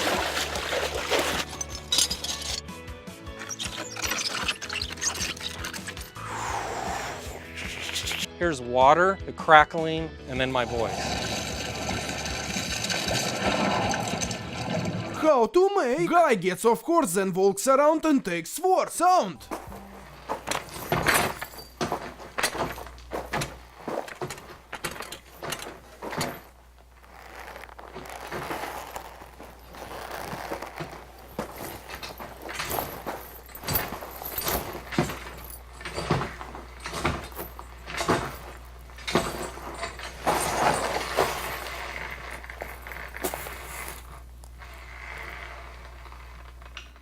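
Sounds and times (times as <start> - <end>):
leather and metal rattling: 0.0 - 2.6, 19.5 - 47.0
footsteps: 19.2 - 44.3
rustling: 19.5 - 47.0.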